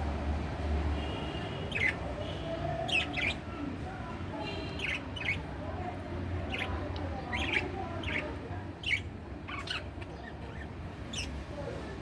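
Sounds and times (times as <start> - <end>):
budgie chirping: 1.7 - 2.0.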